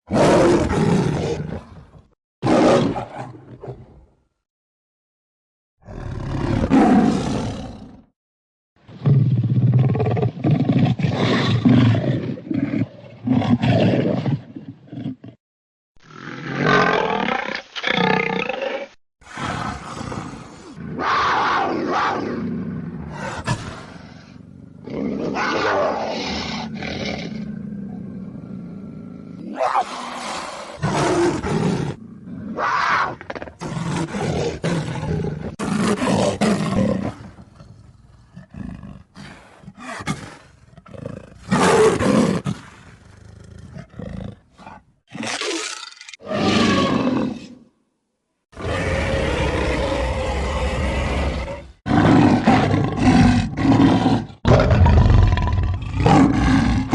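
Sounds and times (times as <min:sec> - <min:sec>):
dogs roaring and snarling: 0:00.1 - 0:03.9, 0:16.3 - 0:43.1, 0:43.7 - 0:47.7, 0:48.5 - 0:56.9.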